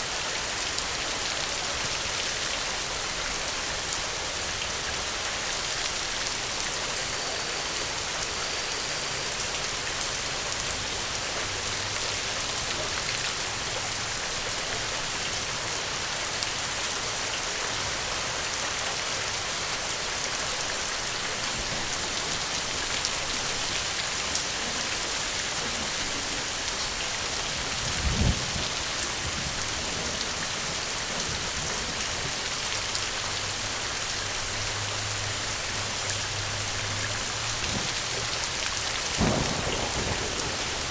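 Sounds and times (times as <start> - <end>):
steady rain: 0.0 - 40.9
low rumble of thunder: 21.4 - 32.4, 37.6 - 40.9.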